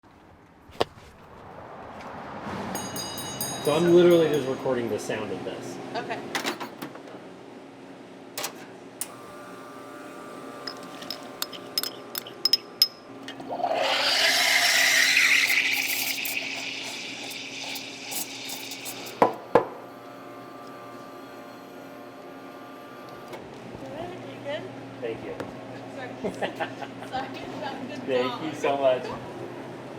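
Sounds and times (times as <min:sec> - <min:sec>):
steam wand frothing milk: 0:13.4 - 0:22.0.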